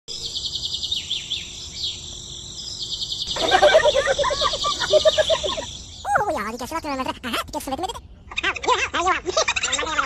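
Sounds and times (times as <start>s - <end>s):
insects chirring: 0.1s - 8.1s
rapid pitched animal calls: 3.3s - 6.4s.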